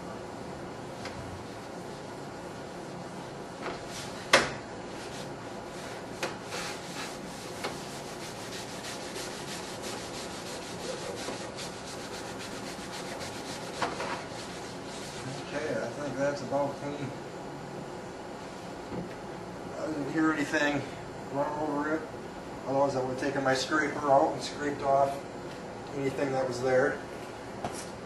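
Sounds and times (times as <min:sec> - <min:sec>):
scouring pad scrubbing glass: 0:06.5 - 0:15.3.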